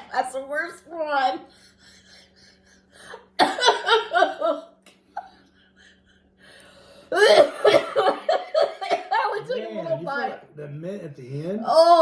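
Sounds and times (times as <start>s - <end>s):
people coughing: 3.4s - 4.5s, 7.1s - 9.5s
people laughing: 3.4s - 4.6s, 7.6s - 10.0s.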